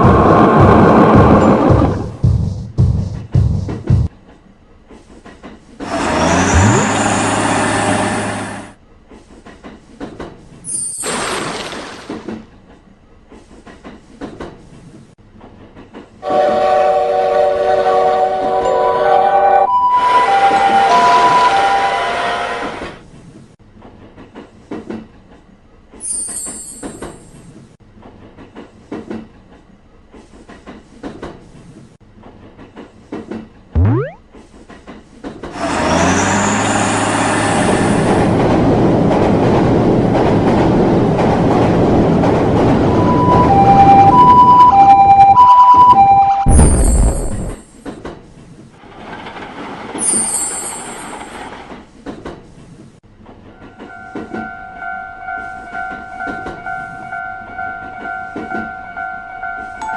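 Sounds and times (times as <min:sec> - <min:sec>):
train rushing past: 0:05.8 - 0:08.8
brief high-pitched sound: 0:33.8 - 0:34.2.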